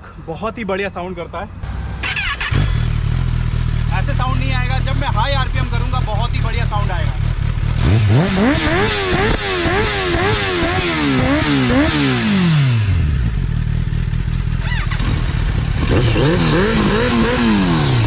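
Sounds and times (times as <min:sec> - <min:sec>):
motorcycle engine revving: 0:01.6 - 0:18.0.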